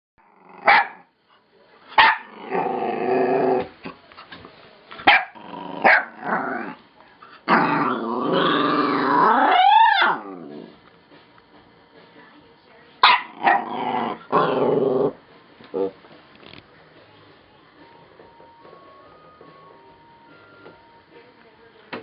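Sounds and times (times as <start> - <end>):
puppy growling: 0.2 - 0.8, 2.2 - 4.0, 5.2 - 10.8, 13.0 - 16.0.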